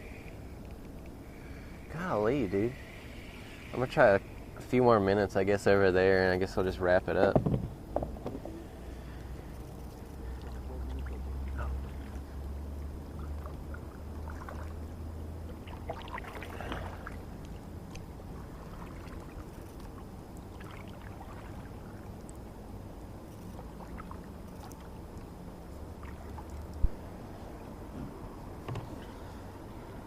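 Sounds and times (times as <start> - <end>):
low steady rumble: 0.0 - 30.0
knocks against kayak hull: 7.3 - 8.5, 28.0 - 29.0
paddle splashes and drips: 9.9 - 27.8.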